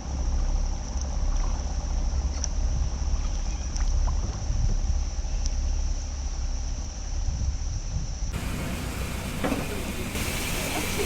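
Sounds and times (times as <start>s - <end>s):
boat engine running: 8.4s - 11.0s
high hiss: 8.4s - 11.0s.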